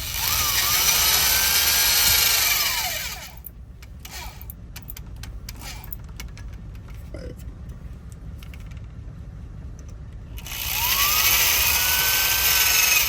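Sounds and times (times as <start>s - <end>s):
power drill whining: 0.0s - 4.5s, 5.5s - 6.0s, 10.4s - 13.0s.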